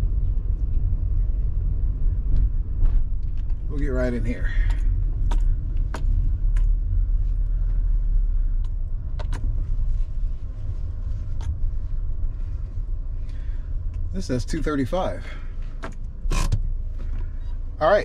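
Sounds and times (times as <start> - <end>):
car engine and tyres rumbling: 0.0 - 18.0.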